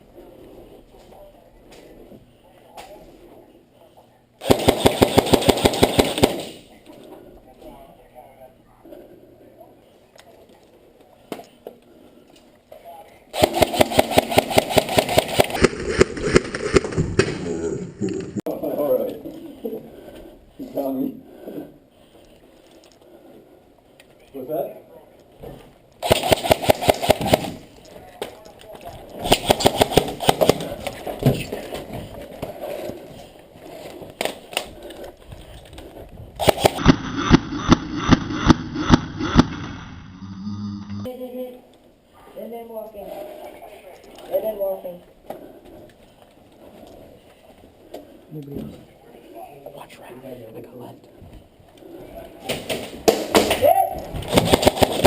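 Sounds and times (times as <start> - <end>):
airsoft gun firing rapidly: 4.4 - 6.6, 13.4 - 17.2, 26.0 - 27.7, 29.2 - 30.8, 36.4 - 39.6, 54.2 - 55.0.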